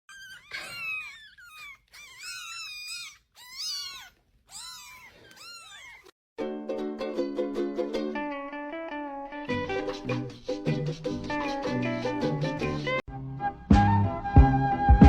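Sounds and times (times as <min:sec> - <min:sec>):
kitten mewing: 0:00.1 - 0:06.1
plucked ukulele music: 0:06.4 - 0:13.0.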